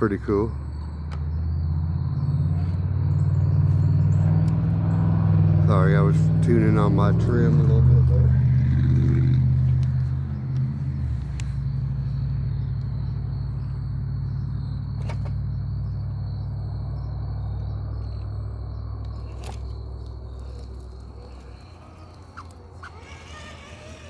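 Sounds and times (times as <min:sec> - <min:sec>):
electric motor rumbling: 0:00.9 - 0:24.0.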